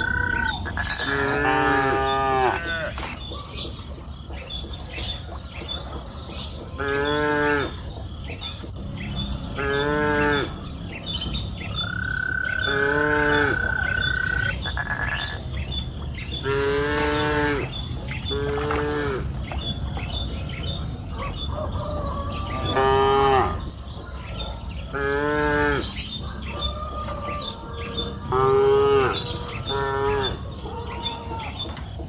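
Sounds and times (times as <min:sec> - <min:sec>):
cows mooing: 0:00.0 - 0:03.0, 0:06.8 - 0:07.8, 0:09.5 - 0:10.8, 0:12.6 - 0:15.3, 0:16.4 - 0:17.7, 0:18.3 - 0:19.3, 0:22.4 - 0:23.7, 0:24.9 - 0:26.0, 0:27.7 - 0:30.5.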